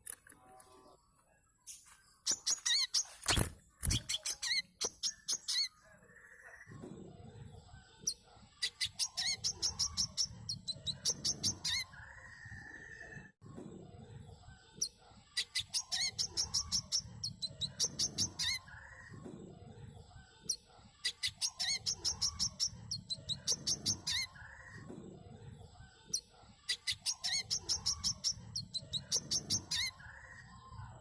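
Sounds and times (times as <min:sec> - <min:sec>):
sunbird singing high-pitched chirps: 0:01.7 - 0:03.2, 0:03.9 - 0:05.7, 0:08.6 - 0:12.0, 0:15.4 - 0:18.8, 0:21.0 - 0:24.6, 0:26.2 - 0:30.5.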